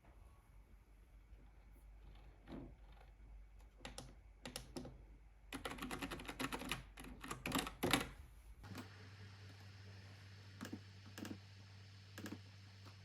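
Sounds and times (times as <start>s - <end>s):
keyboard keystrokes: 3.8s - 8.9s.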